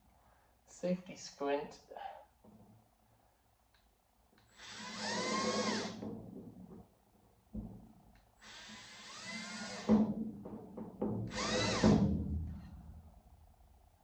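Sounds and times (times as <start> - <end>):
power drill drilling into sheet steel: 4.5 - 6.0, 8.4 - 10.0, 11.3 - 12.0.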